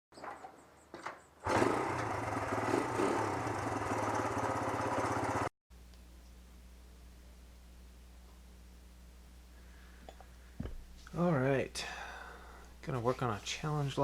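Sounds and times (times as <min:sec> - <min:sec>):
small engine running: 0:01.4 - 0:05.5
low steady hum: 0:05.7 - 0:14.0.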